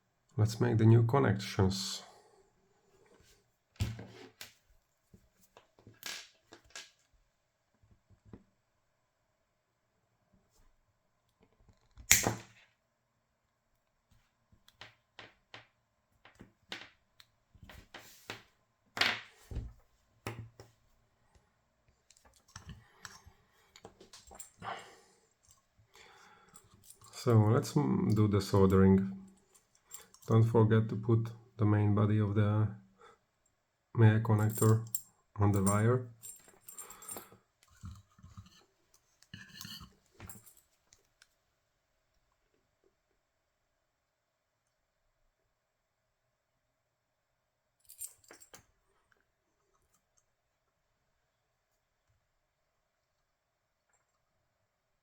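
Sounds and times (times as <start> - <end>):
small parts and tools rattling: 29.3 - 30.4, 34.4 - 40.7.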